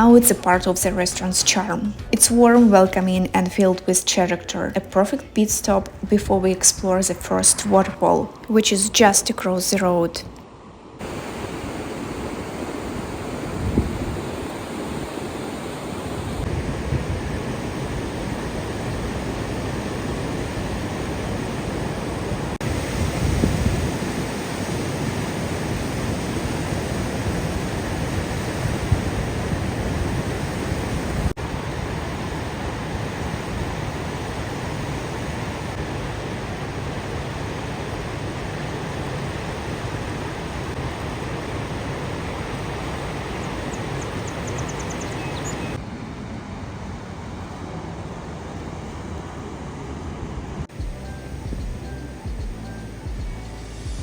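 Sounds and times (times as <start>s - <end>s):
waterfall rushing: 11.0s - 45.8s.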